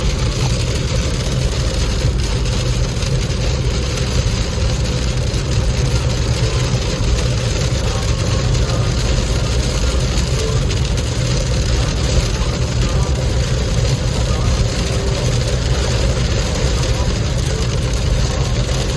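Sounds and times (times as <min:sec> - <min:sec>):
car engine and road rumble: 0:00.0 - 0:18.9
rain hissing on car: 0:00.0 - 0:18.9.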